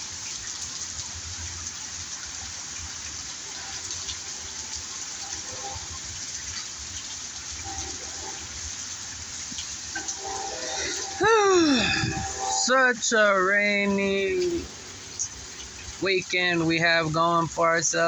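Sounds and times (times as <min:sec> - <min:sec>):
steady rain: 0:00.0 - 0:18.0.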